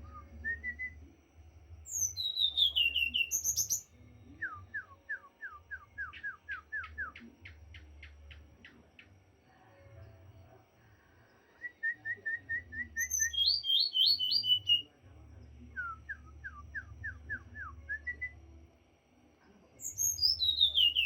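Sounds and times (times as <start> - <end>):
songbird whistling: 1.9 - 8.1, 11.7 - 14.9, 19.8 - 21.0.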